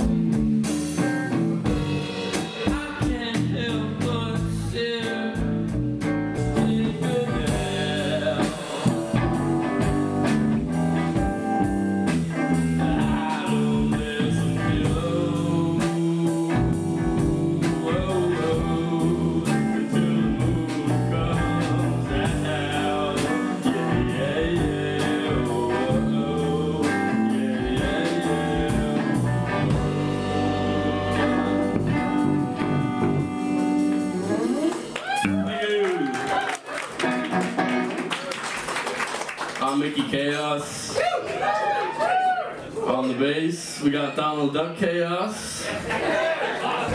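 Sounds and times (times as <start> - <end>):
drum kit beat: 0.0 - 35.6
rock guitar: 0.0 - 36.3, 37.0 - 38.1
person singing: 1.8 - 5.6, 6.4 - 10.1, 12.4 - 36.4.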